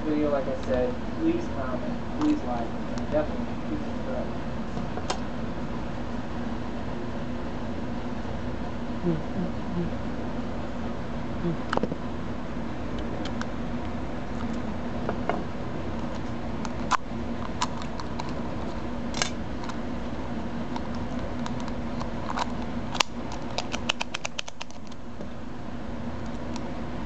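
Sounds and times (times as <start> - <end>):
low hum: 0.0 - 27.0.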